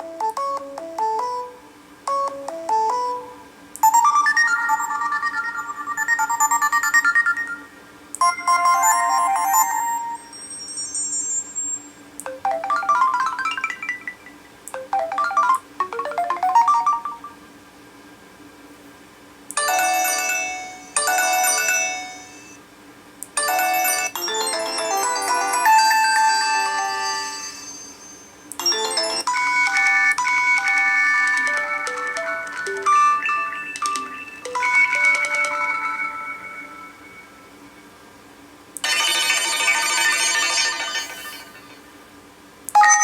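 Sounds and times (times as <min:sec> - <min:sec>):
phone ringtone chiming melodies: 0:00.3 - 0:17.4, 0:19.6 - 0:22.6, 0:23.4 - 0:37.5.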